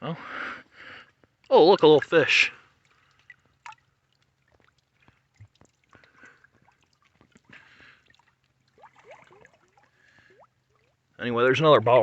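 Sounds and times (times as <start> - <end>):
creek water trickling: 0.7 - 11.4.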